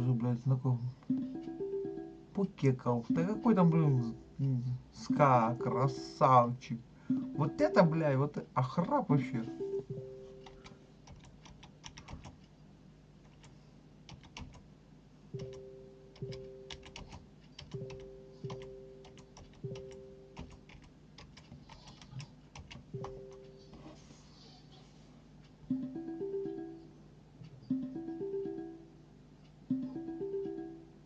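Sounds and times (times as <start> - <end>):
typing on computer keyboard: 10.4 - 12.4, 14.1 - 14.6, 15.4 - 15.6, 16.2 - 23.5.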